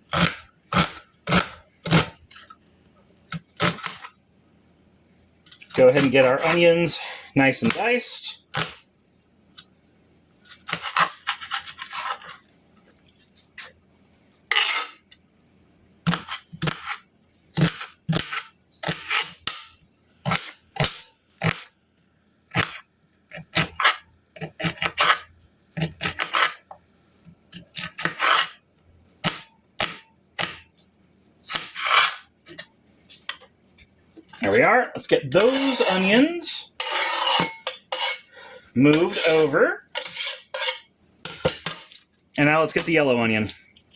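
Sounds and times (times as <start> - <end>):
knife chopping on cutting board: 0.1 - 2.2, 3.3 - 4.1, 16.1 - 19.7, 20.3 - 21.7, 22.5 - 25.2, 25.8 - 26.6, 29.2 - 30.6, 31.5 - 32.2.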